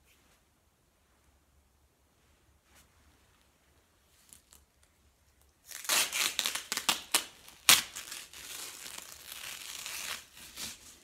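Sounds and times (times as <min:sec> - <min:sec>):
cloth tape crinkling and tearing: 0:04.2 - 0:11.0.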